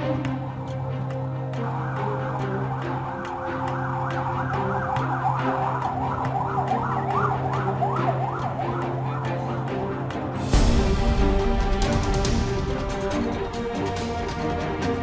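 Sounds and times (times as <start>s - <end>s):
police siren yelp: 1.5s - 10.2s.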